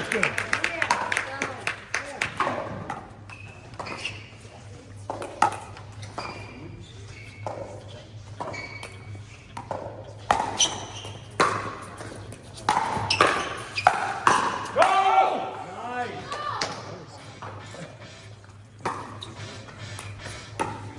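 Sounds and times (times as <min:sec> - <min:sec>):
racket striking ball: 0:09.6 - 0:11.9, 0:12.6 - 0:14.9, 0:18.8 - 0:19.2, 0:19.9 - 0:20.9.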